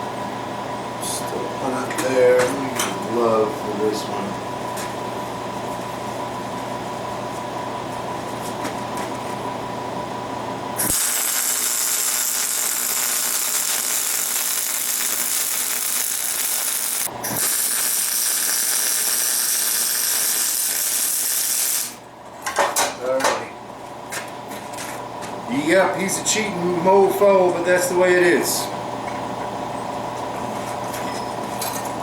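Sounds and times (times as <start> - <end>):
welding arc crackling hiss: 10.8 - 22.0
welding machine hum: 10.8 - 22.2.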